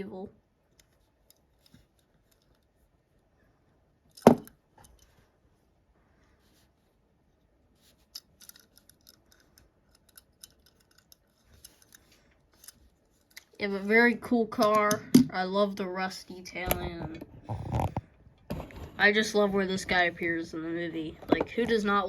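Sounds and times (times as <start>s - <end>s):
toy cars clicking and tapping: 8.1s - 13.5s.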